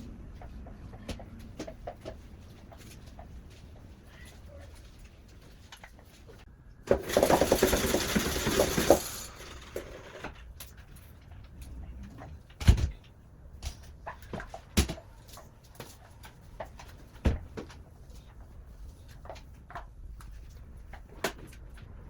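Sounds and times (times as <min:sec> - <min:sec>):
splashing and scrubbing floor: 0:06.9 - 0:10.3.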